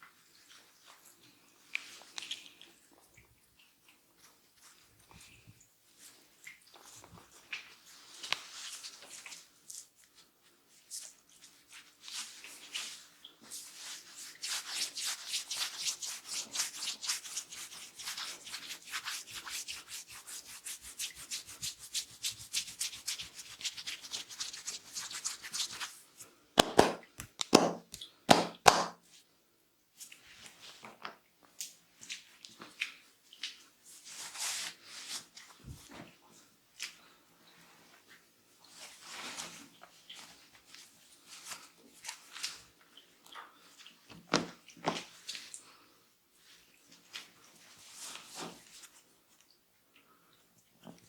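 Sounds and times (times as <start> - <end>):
hands rubbing scalp and hair: 13.5 - 26.0
hand strikes on head: 26.6 - 27.0, 27.6 - 29.0.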